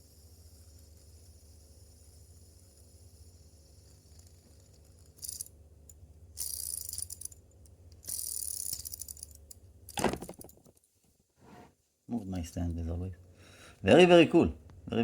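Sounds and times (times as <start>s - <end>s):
fidget spinner rattling whir: 0.0s - 10.8s.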